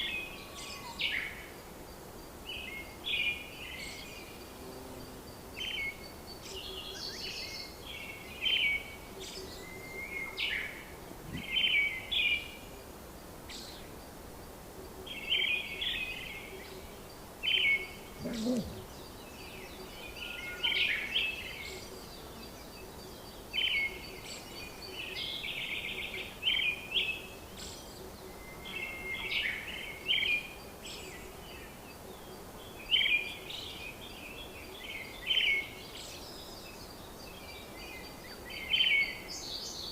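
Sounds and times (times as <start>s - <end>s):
background hiss: 0.0s - 39.9s
birds chirping and singing: 15.1s - 31.6s
faint low hum: 17.8s - 20.2s.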